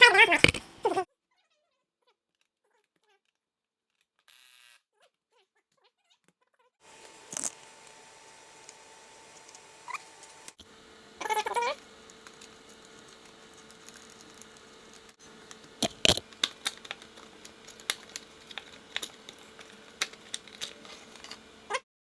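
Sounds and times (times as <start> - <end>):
faint steady hum: 6.9 - 21.8.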